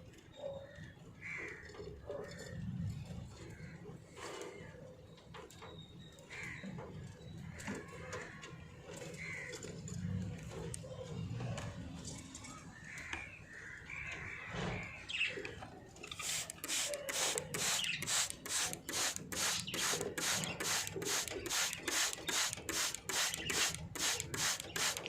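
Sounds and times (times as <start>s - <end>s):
rhythmic rasping scrape: 16.2s - 25.0s.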